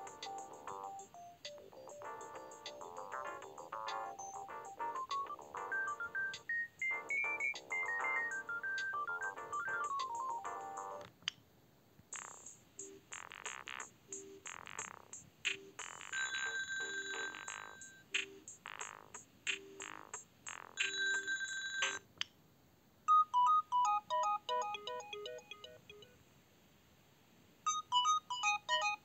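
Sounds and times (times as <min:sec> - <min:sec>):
melodic phone ringtone: 0:00.0 - 0:11.0, 0:16.1 - 0:18.1, 0:20.8 - 0:22.0, 0:23.1 - 0:26.1, 0:27.7 - 0:29.0
percussive ringtone with high beeps: 0:00.0 - 0:11.0, 0:15.5 - 0:18.3, 0:20.8 - 0:22.0, 0:23.1 - 0:26.1, 0:27.7 - 0:29.0.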